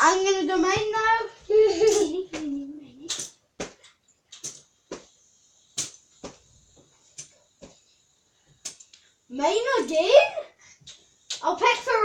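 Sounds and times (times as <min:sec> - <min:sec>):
fidget spinners clicking in bag: 0:01.9 - 0:06.0.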